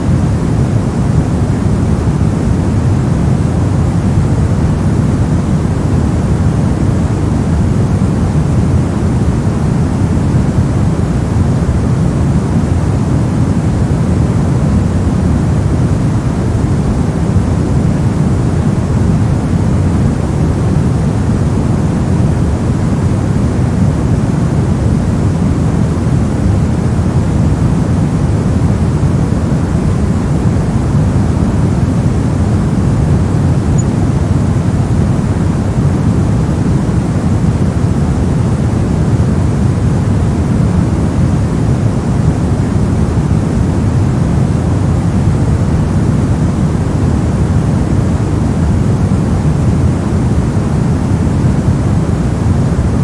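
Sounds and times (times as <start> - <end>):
deep white noise rush: 0.0 - 53.0.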